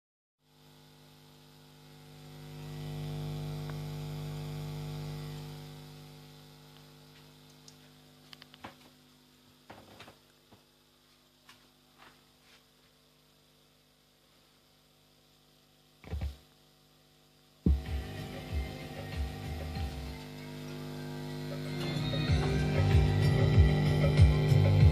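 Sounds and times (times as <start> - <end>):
subwoofer mains hum: 0.4 - 24.9
small clicks and taps: 6.7 - 8.9.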